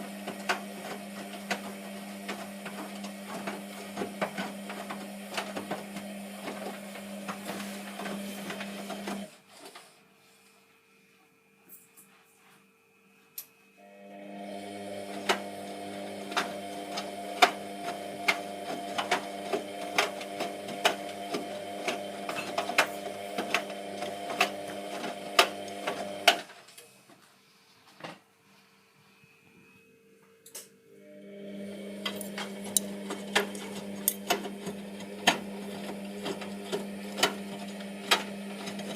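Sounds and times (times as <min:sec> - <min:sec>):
washing machine motor humming: 0:00.0 - 0:09.4, 0:13.8 - 0:26.5, 0:31.0 - 0:38.9.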